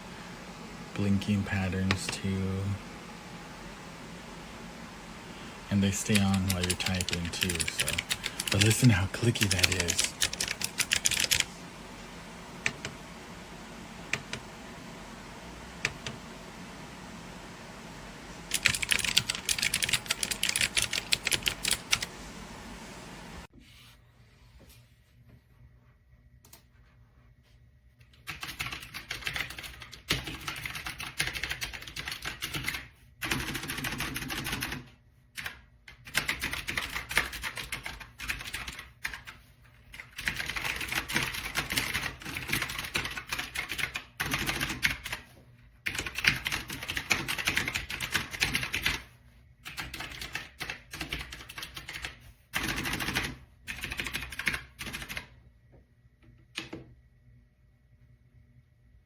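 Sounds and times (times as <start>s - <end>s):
mechanical keyboard typing: 5.7s - 11.6s, 14.1s - 14.4s, 18.5s - 22.2s, 28.2s - 34.8s, 35.4s - 39.3s, 39.9s - 45.2s, 45.8s - 49.0s, 49.6s - 55.3s.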